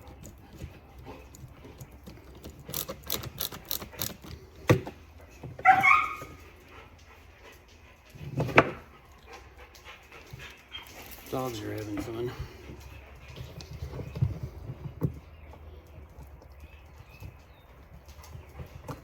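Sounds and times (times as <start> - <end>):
sharp clicks and knocks: 0.0 - 5.6
dog whining: 5.6 - 6.4.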